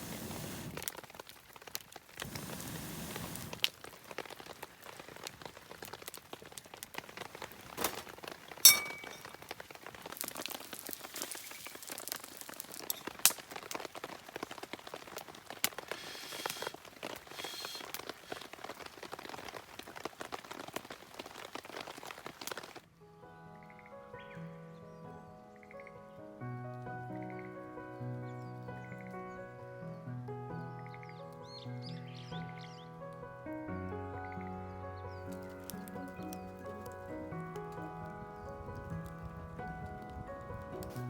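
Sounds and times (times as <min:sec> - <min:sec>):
campfire crackling and popping: 0:00.0 - 0:22.9, 0:34.4 - 0:41.0
rain pattering: 0:00.0 - 0:23.0, 0:35.1 - 0:41.0.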